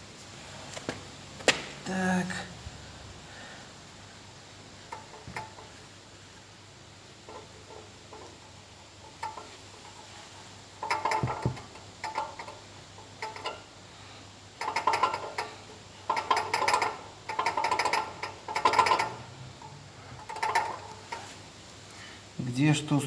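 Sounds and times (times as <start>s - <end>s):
exhaust silencer metallic rattling: 4.7s - 6.1s, 7.1s - 13.8s, 14.5s - 21.4s.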